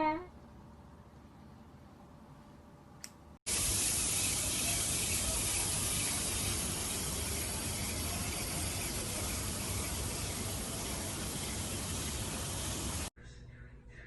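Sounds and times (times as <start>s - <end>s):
water running: 3.5s - 13.1s.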